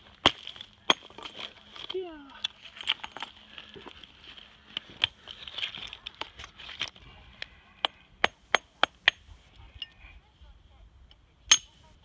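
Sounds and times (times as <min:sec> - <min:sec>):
stones clinking together: 0:00.0 - 0:04.0, 0:04.8 - 0:10.0, 0:11.5 - 0:11.8
gritty scraping and crunching: 0:00.0 - 0:10.0.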